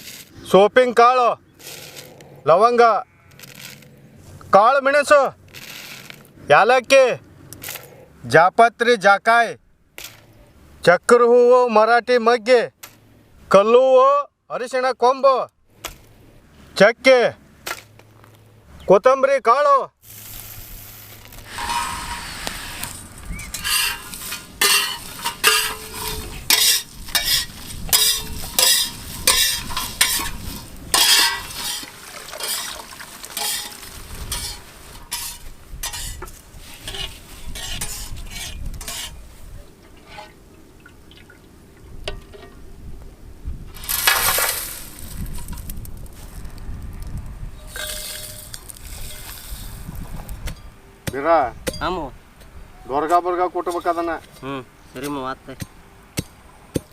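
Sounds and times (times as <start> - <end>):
light sizzle: 20.0 - 38.2, 43.8 - 50.7
ladle scraping spices in pan: 20.1 - 39.2, 47.7 - 49.8.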